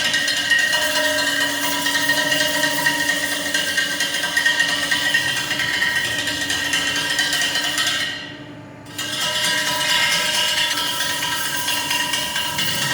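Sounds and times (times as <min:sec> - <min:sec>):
workshop machine whining: 0:04.9 - 0:12.9
rapid machine clicking: 0:09.2 - 0:12.9.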